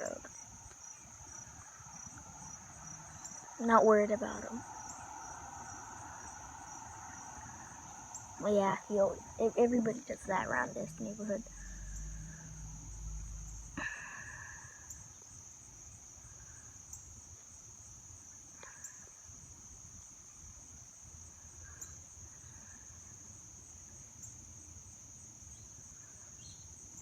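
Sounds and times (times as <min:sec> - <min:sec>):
insect chorus trill: 0:00.0 - 0:27.0
faint ticks: 0:18.6 - 0:19.2.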